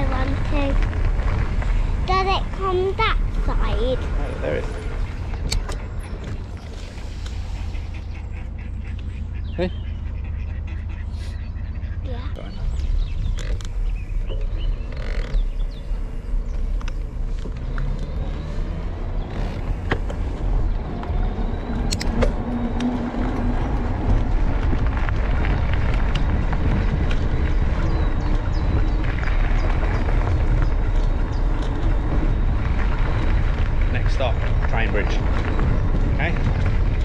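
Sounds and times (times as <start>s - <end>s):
bike tyres rattling on gravel: 0.0s - 7.1s, 12.9s - 18.4s, 23.1s - 37.0s
wind rumbling on microphone: 0.0s - 37.0s.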